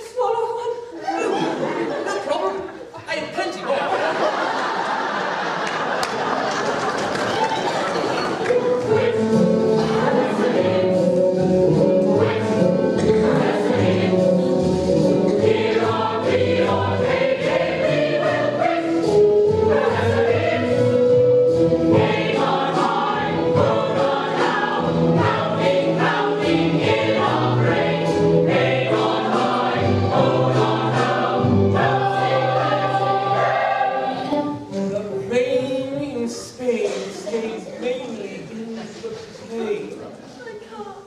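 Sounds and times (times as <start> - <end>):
musical accompaniment: 6.8 - 36.3
chorus singing show tune: 7.7 - 38.5.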